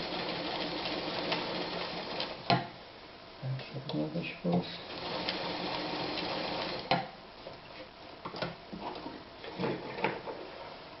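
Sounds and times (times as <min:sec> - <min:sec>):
sewing machine running: 0:00.0 - 0:02.4, 0:04.9 - 0:06.9.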